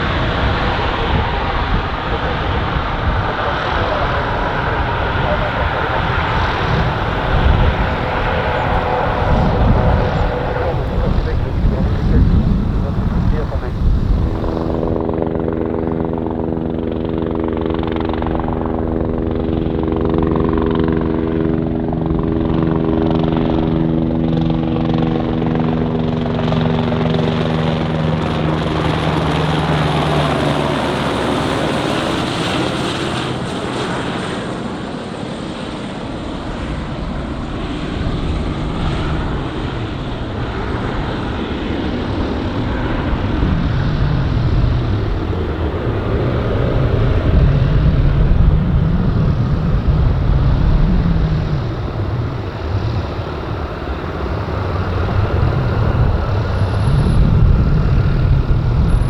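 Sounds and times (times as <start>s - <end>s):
broad rushing noise: 0.0s - 15.0s, 38.9s - 59.0s
aircraft propeller hum: 0.0s - 59.0s
faint high whine: 2.7s - 15.0s.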